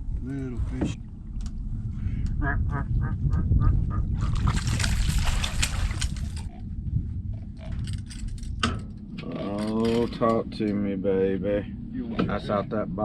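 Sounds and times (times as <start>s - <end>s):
steady low rumble: 0.0s - 13.0s
fish splashing at water surface: 4.2s - 6.5s.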